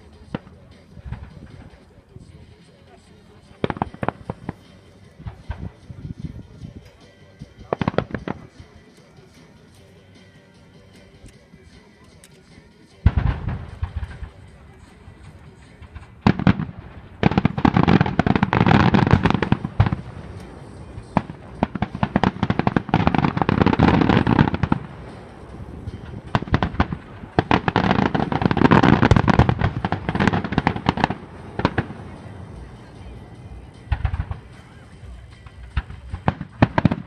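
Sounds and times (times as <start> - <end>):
fireworks cracks and bangs: 15.4 - 25.2, 25.9 - 32.7, 35.4 - 37.0.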